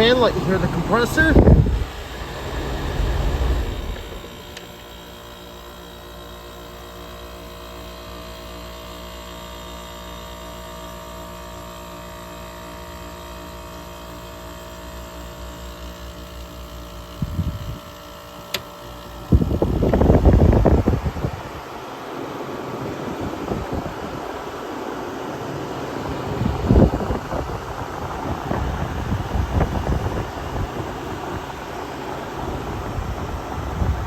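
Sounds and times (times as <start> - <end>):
loud rush of noise: 0.0 - 4.7
compressor humming: 0.0 - 34.0.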